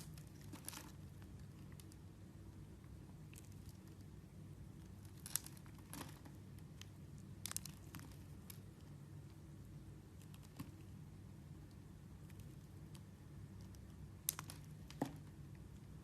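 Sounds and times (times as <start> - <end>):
faint low hum: 0.0 - 16.0.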